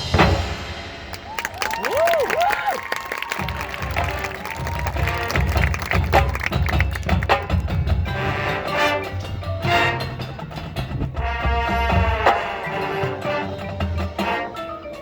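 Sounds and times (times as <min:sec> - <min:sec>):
marching band playing: 0:00.0 - 0:15.0.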